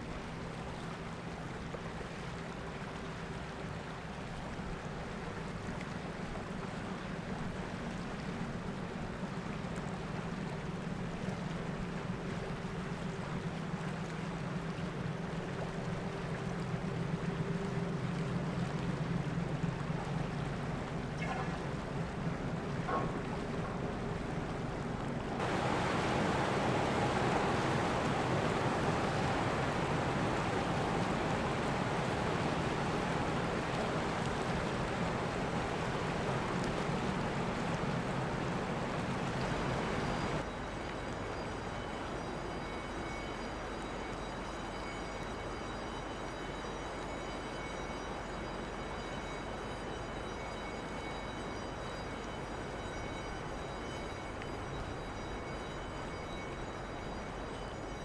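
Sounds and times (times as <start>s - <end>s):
ship machinery humming: 16.8s - 40.4s.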